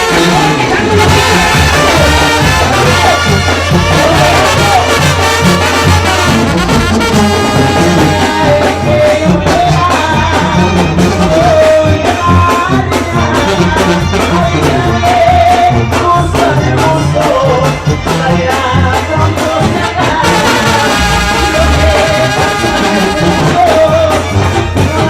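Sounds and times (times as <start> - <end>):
bass and drums: 0.0 - 25.0
brass band music: 0.0 - 25.0.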